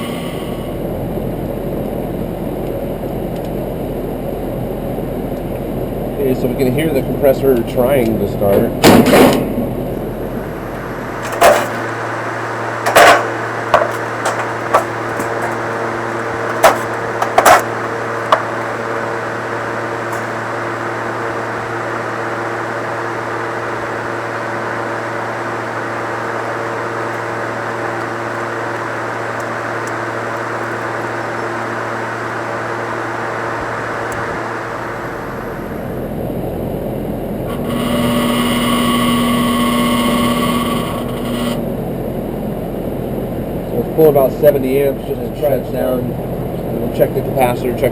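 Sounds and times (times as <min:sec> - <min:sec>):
compressor humming: 0:00.0 - 0:47.9.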